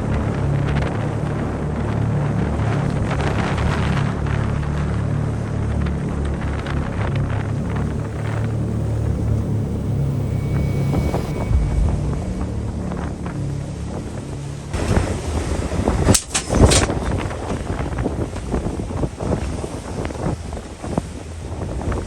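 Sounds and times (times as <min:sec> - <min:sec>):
boat engine droning: 0:06.1 - 0:16.0
rough rush of noise: 0:06.4 - 0:15.4
sharp loud bursts: 0:06.7 - 0:14.7.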